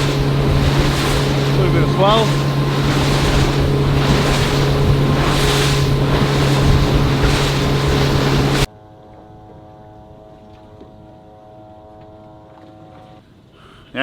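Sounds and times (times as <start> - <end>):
wind and water rushing: 0.0 - 8.7
boat engine running: 0.0 - 13.5.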